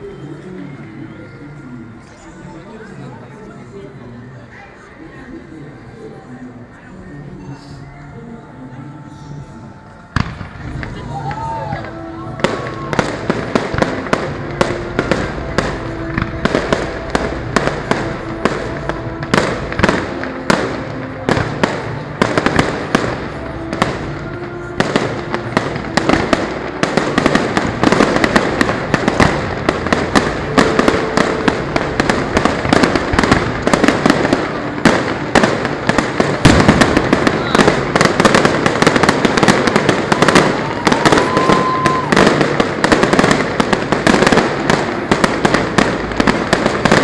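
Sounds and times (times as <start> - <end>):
fireworks bangs and crackling: 10.0 - 47.0.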